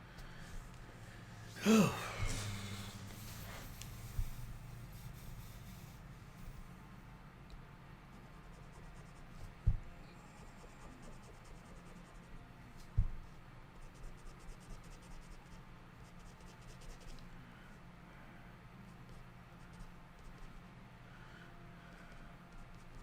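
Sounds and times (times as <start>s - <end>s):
steady low hum: 0.0s - 23.0s
pen scratching on paper: 2.3s - 6.0s, 8.1s - 12.4s, 13.8s - 17.2s, 18.9s - 20.6s, 22.0s - 23.0s.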